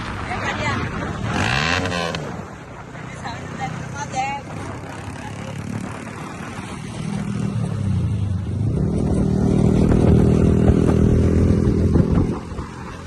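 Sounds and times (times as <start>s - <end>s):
motorcycle engine running: 7.2s - 13.0s.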